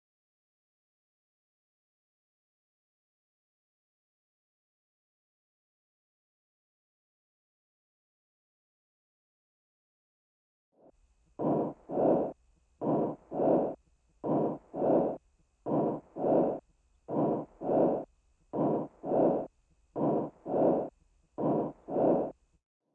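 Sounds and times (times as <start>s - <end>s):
breathing in and out: 10.8s - 22.5s.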